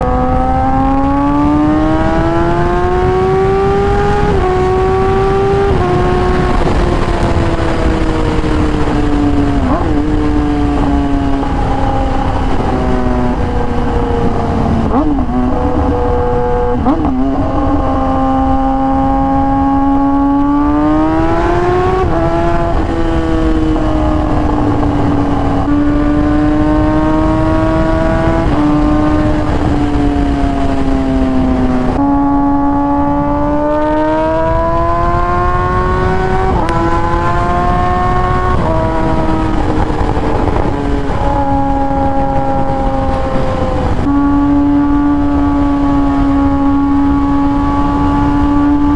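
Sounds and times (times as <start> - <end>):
motorcycle engine revving through gears: 0.0 - 48.9
wind rumble on microphone: 0.0 - 48.9.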